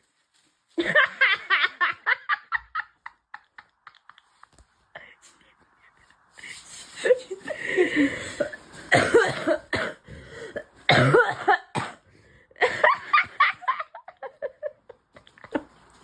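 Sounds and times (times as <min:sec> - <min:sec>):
girl coughing: 0:08.9 - 0:10.0, 0:10.9 - 0:12.1.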